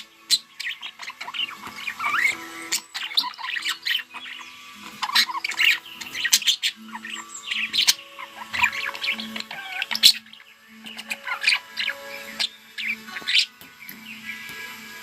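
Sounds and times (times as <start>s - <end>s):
budgerigars chattering: 0.0s - 15.0s.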